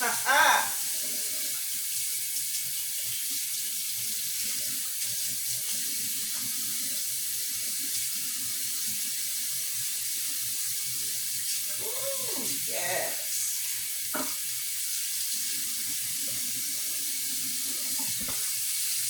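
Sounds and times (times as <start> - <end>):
water running: 0.0 - 19.0.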